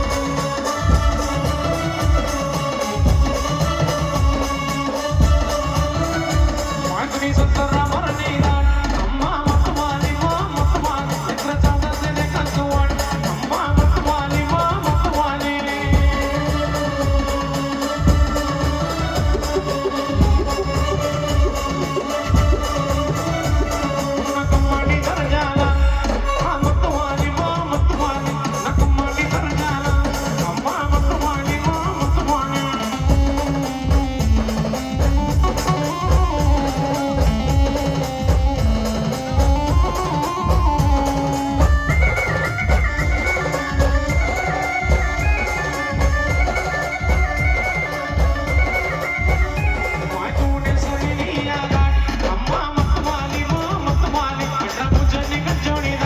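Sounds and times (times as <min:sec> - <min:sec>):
heavy drum beat: 0:00.0 - 0:56.0.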